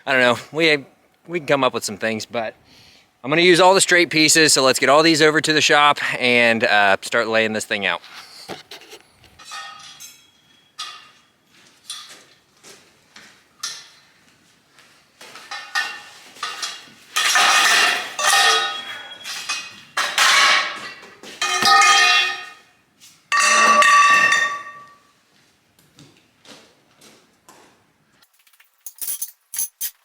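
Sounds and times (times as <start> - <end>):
metal tubes clanking and rattling: 9.4 - 11.3, 15.4 - 22.7, 23.3 - 25.0.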